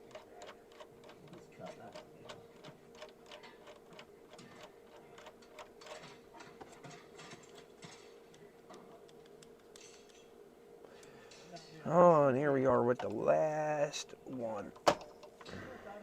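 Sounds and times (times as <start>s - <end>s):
faint clicking and ticking: 0.0s - 6.1s
steady low hum: 0.0s - 16.0s.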